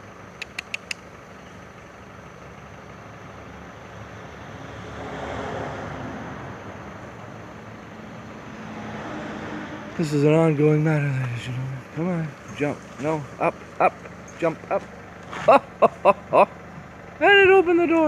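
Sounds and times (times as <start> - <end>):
motor vehicle road noise: 0.0 - 18.0
quick high ticks: 0.4 - 1.1.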